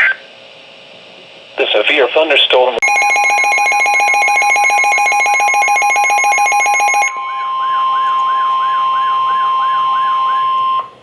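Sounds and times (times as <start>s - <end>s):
steady alert tone: 2.8s - 8.0s
fast-pulsing electronic alarm: 2.8s - 10.9s.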